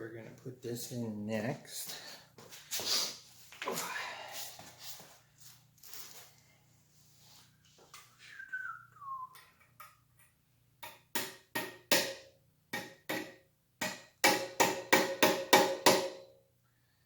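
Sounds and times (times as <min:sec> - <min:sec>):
falling whistle: 0:08.2 - 0:09.4.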